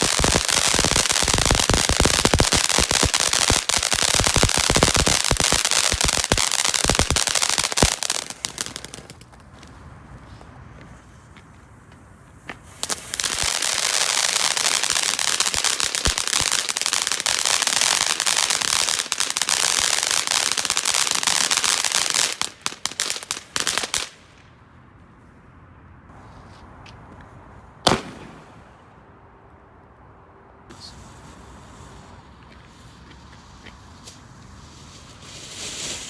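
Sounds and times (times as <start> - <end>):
firework crackling: 0.0 - 9.3, 12.6 - 24.4, 30.7 - 36.0
firework bang: 27.8 - 28.6.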